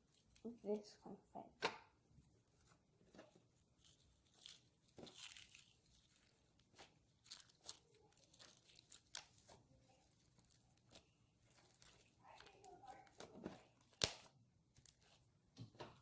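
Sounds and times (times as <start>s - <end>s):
slime crackling in hands: 3.6s - 15.3s.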